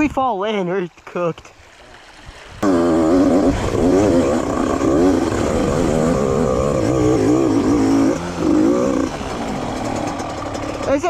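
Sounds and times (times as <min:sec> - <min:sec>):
dirt bike engine revving: 0:02.6 - 0:11.0.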